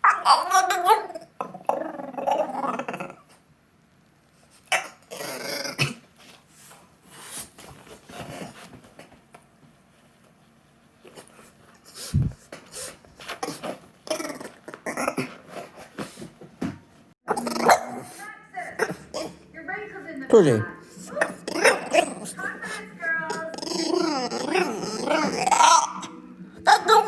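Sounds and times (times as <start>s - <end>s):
puppy howling and whining: 0.0s - 3.2s, 21.0s - 27.0s.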